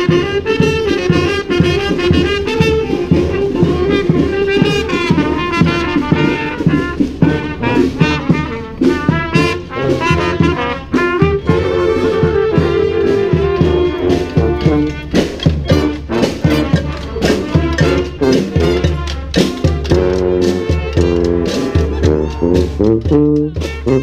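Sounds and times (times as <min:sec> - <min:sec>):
brass band playing cumbia: 0:00.0 - 0:24.0
steady drum beat: 0:00.0 - 0:24.0.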